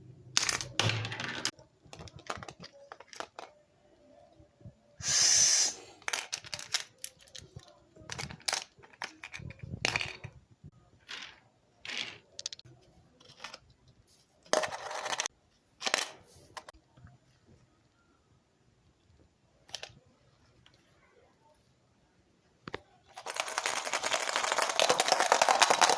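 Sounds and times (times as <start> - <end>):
small hard objects clattering: 23.1 - 25.9.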